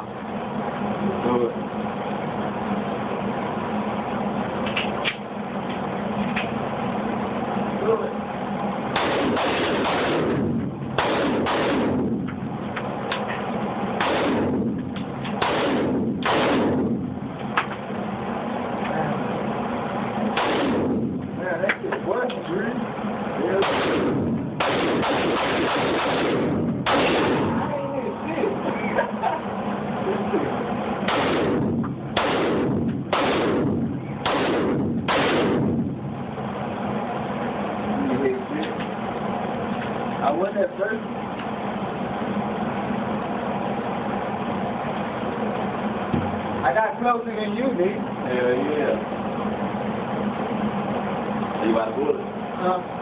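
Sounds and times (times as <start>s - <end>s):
distant gunshot cracks: 8.9s - 12.2s, 14.0s - 17.0s, 20.4s - 21.1s, 23.6s - 27.6s, 31.0s - 35.8s
loud gunshots: 8.9s - 12.3s, 13.9s - 14.8s, 15.4s - 17.2s, 20.3s - 21.2s, 23.5s - 27.8s, 31.0s - 36.0s.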